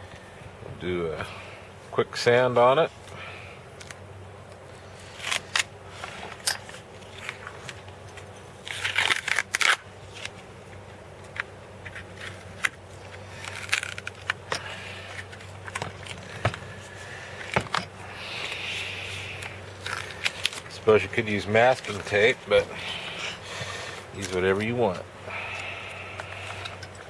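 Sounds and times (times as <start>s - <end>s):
clicks and crackles: 6.4s - 16.6s.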